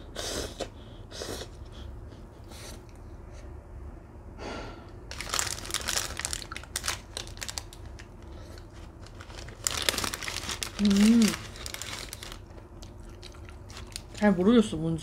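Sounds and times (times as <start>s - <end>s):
food wrapper crinkling: 5.1s - 14.4s.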